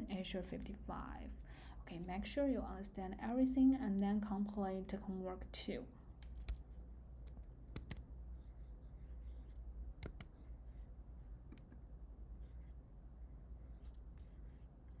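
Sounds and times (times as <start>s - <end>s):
steady low hum: 0.0s - 15.0s
small clicks: 7.3s - 8.0s, 10.0s - 10.4s.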